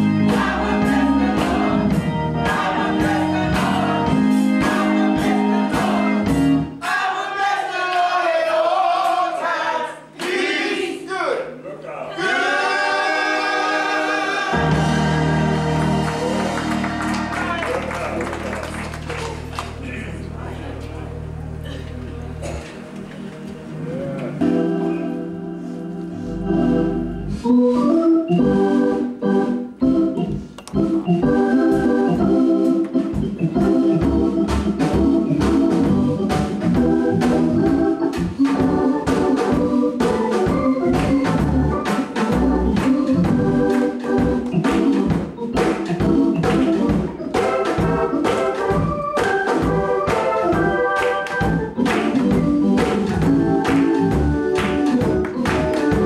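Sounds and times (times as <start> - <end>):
steady drum beat: 0.0 - 6.7, 14.5 - 17.5, 33.0 - 56.0
organ playing chords: 0.0 - 7.2, 12.1 - 56.0.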